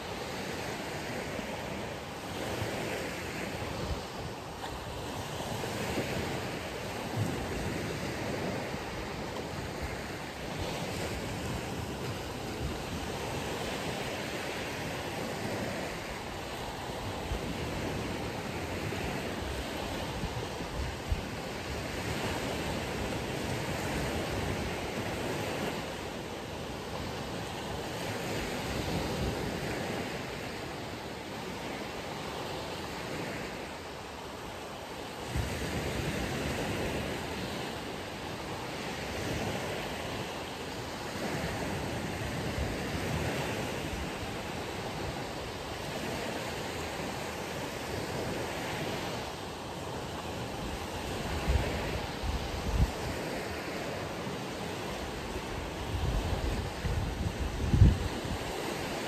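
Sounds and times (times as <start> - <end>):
waves breaking on a beach: 0.0 - 59.0.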